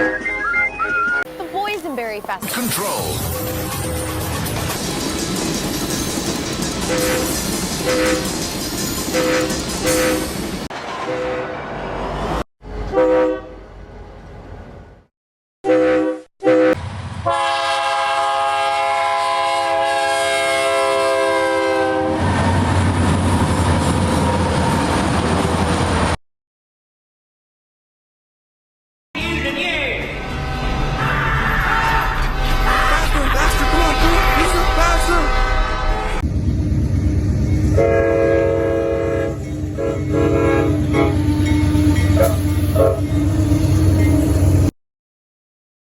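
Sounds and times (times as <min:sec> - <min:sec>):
train rumble and rail clatter: 0:01.3 - 0:15.0, 0:16.8 - 0:26.2, 0:29.2 - 0:44.7
train horn blasts: 0:06.9 - 0:08.3, 0:09.1 - 0:10.4, 0:11.0 - 0:11.7, 0:12.6 - 0:13.7, 0:15.6 - 0:22.4, 0:30.2 - 0:36.2, 0:37.7 - 0:43.7.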